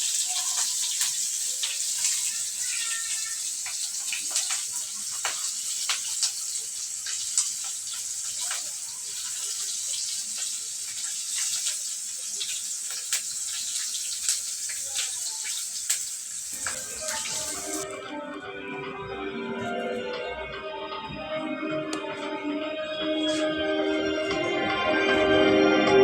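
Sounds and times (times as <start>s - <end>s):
rain hissing: 0.0s - 17.9s
water drips: 0.0s - 17.9s.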